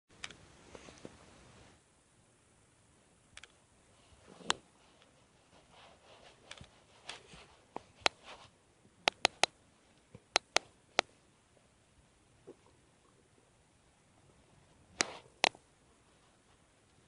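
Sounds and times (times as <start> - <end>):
stomach gurgling: 12.4 - 13.3.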